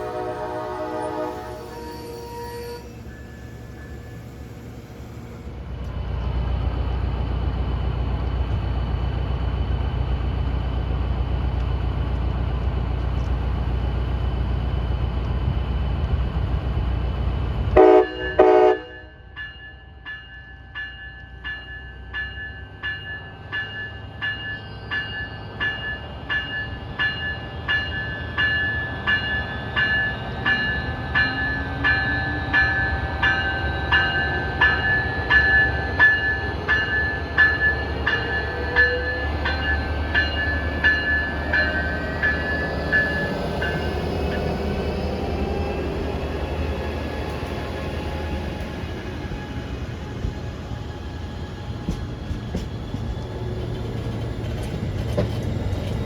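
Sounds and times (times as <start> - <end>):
train horn blast: 0.0 - 3.7, 17.8 - 19.2
train rumbling past: 0.0 - 56.0.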